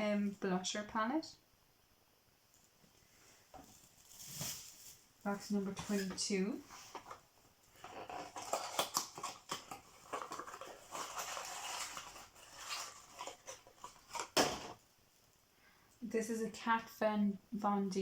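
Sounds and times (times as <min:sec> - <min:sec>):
cardboard and wrapping rustling: 0:03.2 - 0:14.8.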